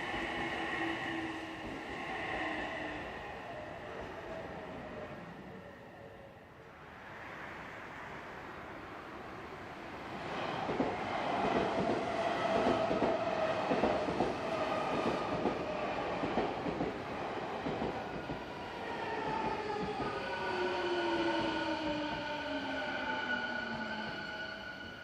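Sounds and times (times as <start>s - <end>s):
train wheels clacking on rails: 10.6s - 17.0s.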